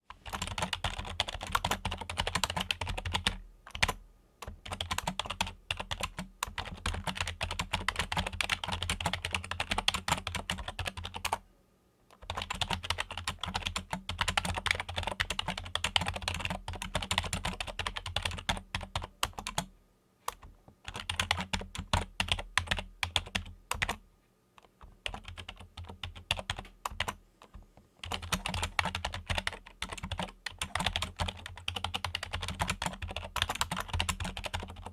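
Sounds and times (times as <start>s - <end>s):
fast typing on keyboard: 0.1s - 11.4s, 12.1s - 19.7s, 20.3s - 24.0s, 24.6s - 34.9s.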